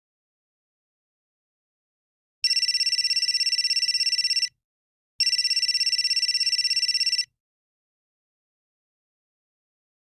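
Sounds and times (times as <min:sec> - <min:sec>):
phone ringtone trilling: 0:02.4 - 0:04.5, 0:05.2 - 0:07.3.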